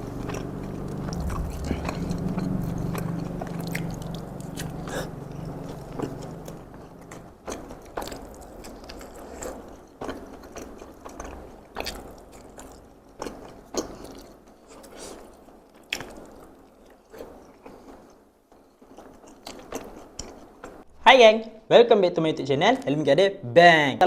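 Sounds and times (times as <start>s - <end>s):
low hum: 0.0s - 8.7s
wet chewing mouth clicks: 0.0s - 16.5s, 18.8s - 20.8s.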